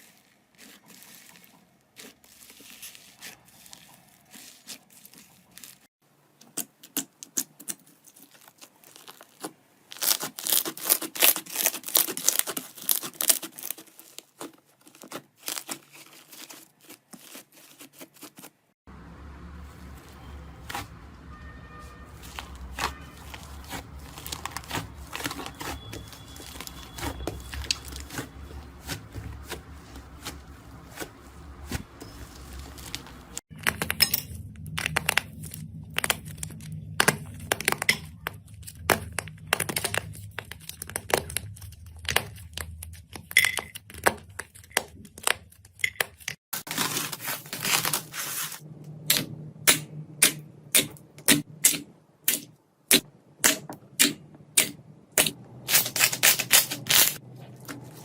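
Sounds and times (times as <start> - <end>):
slime crackling and popping: 6.6 - 17.7, 22.2 - 45.8.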